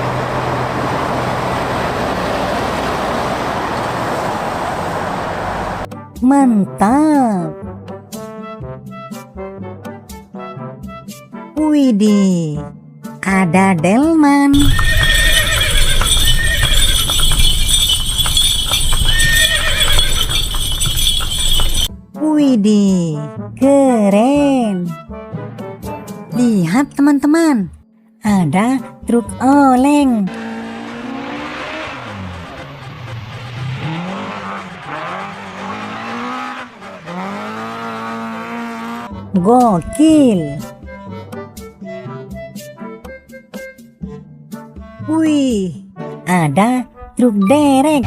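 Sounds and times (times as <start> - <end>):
vehicle engine revving: 0.0 - 5.9, 30.3 - 39.3
hooves clip-clopping: 14.6 - 21.9
horse whinnying: 14.6 - 21.9.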